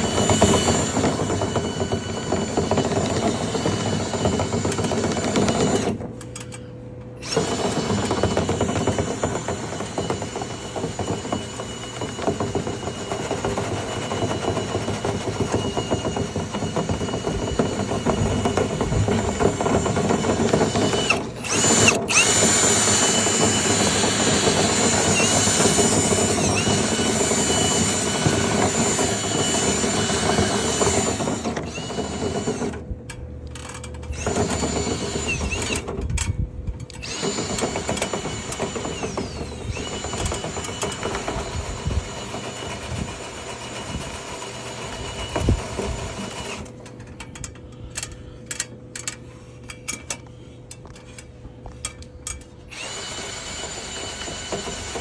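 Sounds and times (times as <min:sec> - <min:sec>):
power drill whining: 0:00.0 - 0:06.6, 0:07.2 - 0:32.8, 0:33.6 - 0:36.2, 0:36.9 - 0:49.1, 0:50.8 - 0:55.0.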